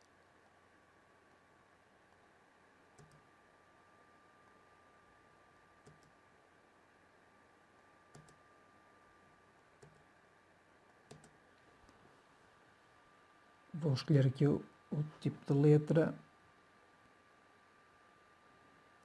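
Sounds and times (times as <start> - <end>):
faint steady hum: 0.0 - 19.0
computer mouse clicks: 2.9 - 3.3, 5.8 - 6.2, 7.8 - 8.4, 9.6 - 10.1, 10.9 - 12.0.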